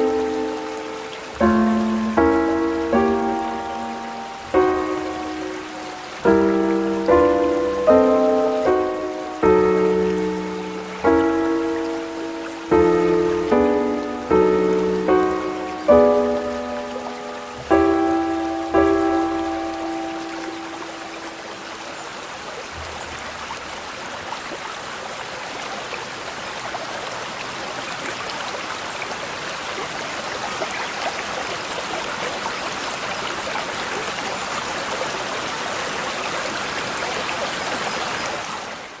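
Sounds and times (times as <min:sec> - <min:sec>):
piano chord: 0:00.0 - 0:21.8
brook trickling and splashing: 0:00.0 - 0:39.0.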